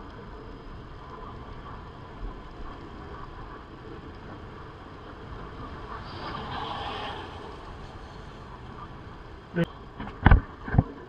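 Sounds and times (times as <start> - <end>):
motorcycle road and wind noise: 0.0 - 11.0.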